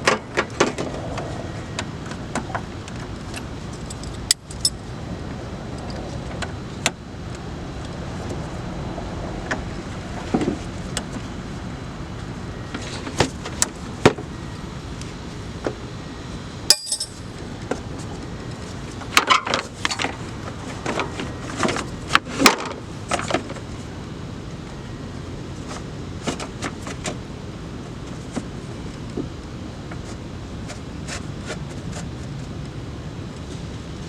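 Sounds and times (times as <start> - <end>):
steady background noise: 0.0 - 34.0
metallic clinks of hand tools: 16.7 - 17.3.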